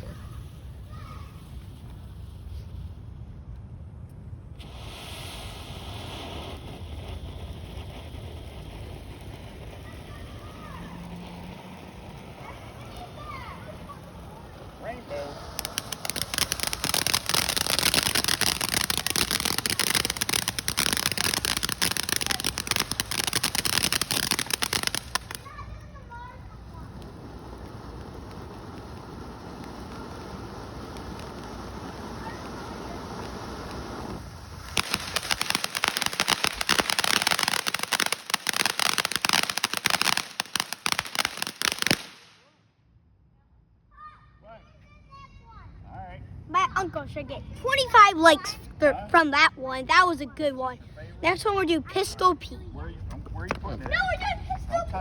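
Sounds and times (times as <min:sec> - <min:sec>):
firework hissing: 0:00.0 - 0:03.3, 0:04.5 - 0:42.4
firework crackling: 0:00.0 - 0:03.6, 0:04.2 - 0:42.6, 0:47.6 - 0:55.0.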